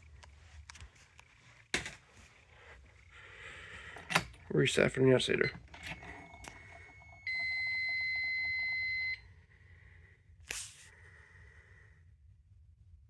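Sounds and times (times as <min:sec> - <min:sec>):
high-pitched alarm beep: 0:05.4 - 0:09.2.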